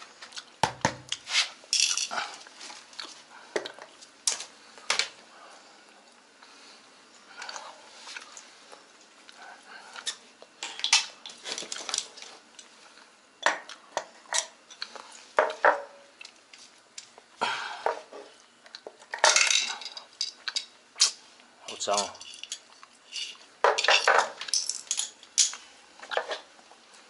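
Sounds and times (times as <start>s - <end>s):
metal tools clinking: 19.1s - 20.7s, 21.7s - 25.6s.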